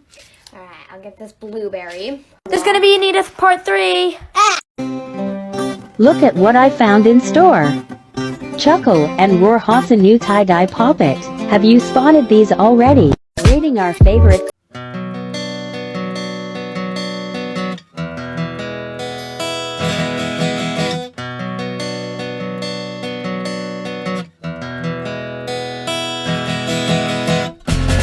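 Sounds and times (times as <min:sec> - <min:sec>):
strummed acoustic guitar: 0:04.8 - 0:09.9, 0:14.7 - 0:28.0.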